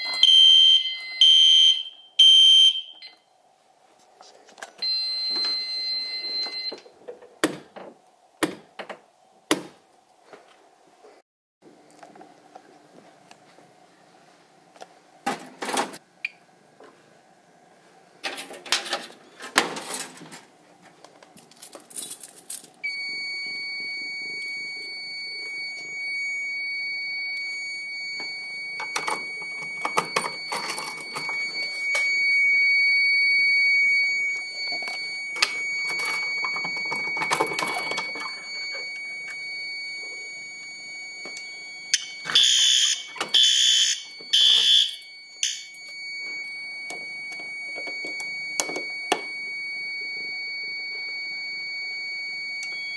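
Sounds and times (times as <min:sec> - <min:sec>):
high-pitched alarm tone: 0:00.0 - 0:03.2, 0:04.8 - 0:06.8, 0:22.9 - 0:52.9
alarm horn blasts: 0:41.4 - 0:45.6.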